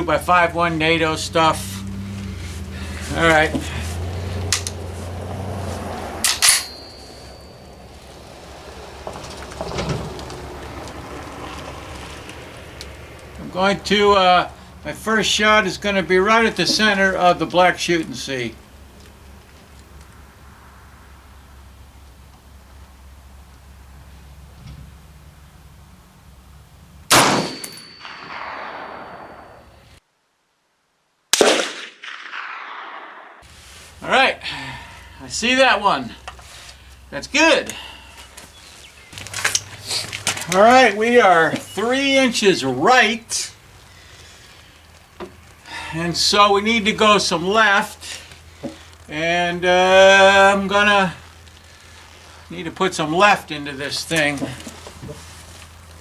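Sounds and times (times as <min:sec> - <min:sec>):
sharp metallic clacks: 0:04.4 - 0:05.0, 0:06.2 - 0:08.0, 0:27.1 - 0:29.5
thin ringing tone: 0:06.2 - 0:08.5, 0:27.5 - 0:29.8
rifle shot: 0:27.1 - 0:29.9, 0:31.3 - 0:33.4.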